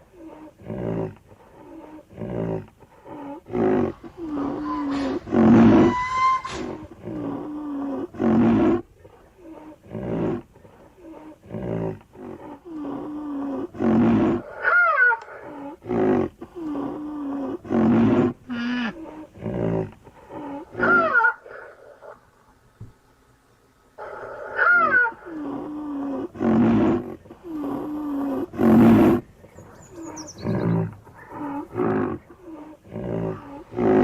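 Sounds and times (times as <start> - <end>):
rhinoceros low calls: 0.0 - 22.2, 24.0 - 34.0
rhinoceros wavering squeals: 3.7 - 7.2, 20.4 - 21.4, 26.9 - 32.7.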